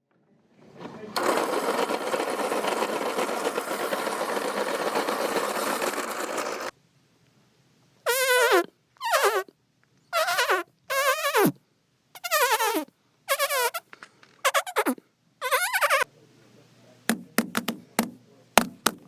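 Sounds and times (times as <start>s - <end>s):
squeaky downward sliding tones: 14.5s - 16.0s.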